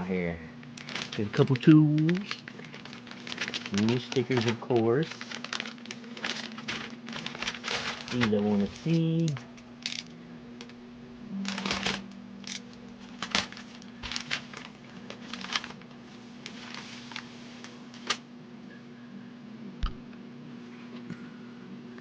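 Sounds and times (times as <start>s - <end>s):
steady low hum: 0.0s - 22.0s
plastic and cardboard rustling: 0.6s - 10.1s, 11.5s - 18.2s.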